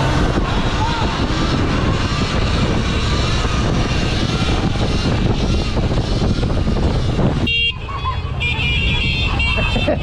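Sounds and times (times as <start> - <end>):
wind rumble on microphone: 0.0 - 7.5
motorbikes riding: 0.0 - 10.0.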